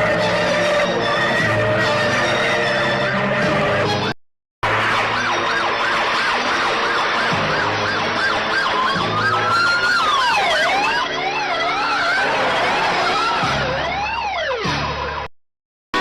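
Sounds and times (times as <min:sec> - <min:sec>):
slow wailing siren: 0:00.0 - 0:04.1, 0:04.7 - 0:15.3
fast warbling siren: 0:00.2 - 0:03.8, 0:04.7 - 0:15.3
quick yelping siren: 0:04.7 - 0:15.3.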